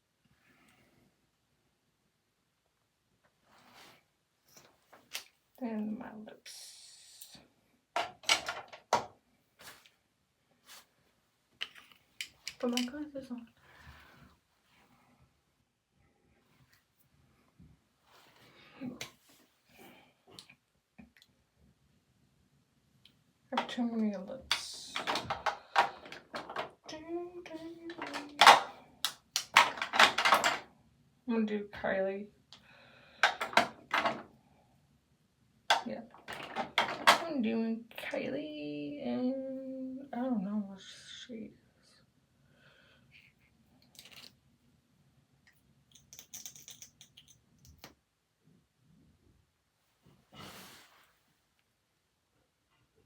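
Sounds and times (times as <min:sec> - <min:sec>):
soft rustle: 0:03.3 - 0:05.5, 0:09.4 - 0:12.2, 0:16.1 - 0:20.4, 0:49.7 - 0:51.8
plastic tubes clicking and clattering: 0:08.0 - 0:09.1, 0:11.6 - 0:13.0, 0:23.6 - 0:27.0, 0:27.8 - 0:30.7, 0:33.2 - 0:34.3, 0:35.7 - 0:37.4, 0:43.8 - 0:44.4, 0:45.9 - 0:48.0.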